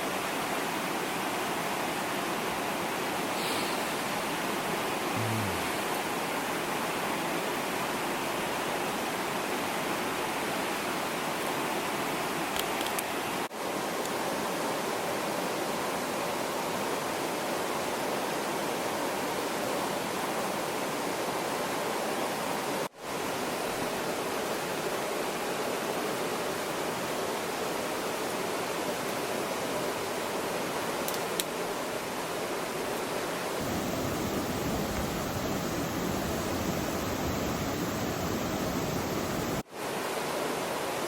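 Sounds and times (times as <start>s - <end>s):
flowing water rushing: 33.6s - 40.7s.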